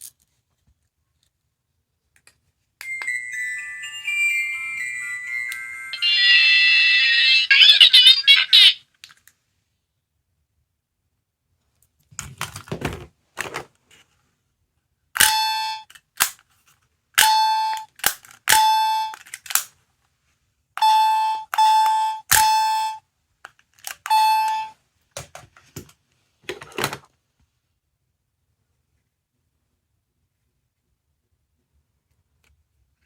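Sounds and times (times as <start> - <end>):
toy electronic beeps: 3.0 - 8.8, 18.5 - 19.2, 20.8 - 23.0, 24.1 - 24.7.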